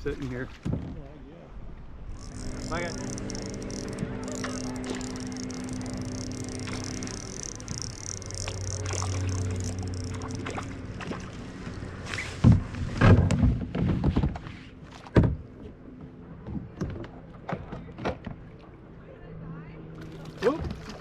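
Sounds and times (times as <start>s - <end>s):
steady low hum: 1.6s - 17.5s.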